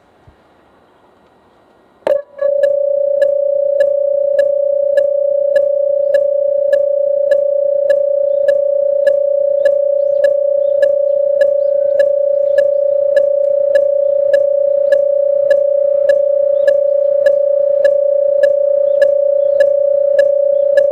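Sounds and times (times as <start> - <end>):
level crossing alarm: 2.1 - 20.9.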